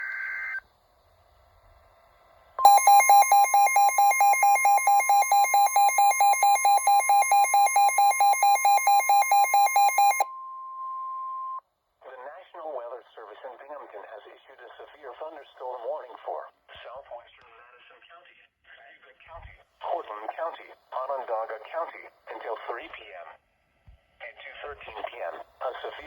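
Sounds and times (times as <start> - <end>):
electronic alarm tones: 2.6 - 10.3
high beep: 2.6 - 10.4.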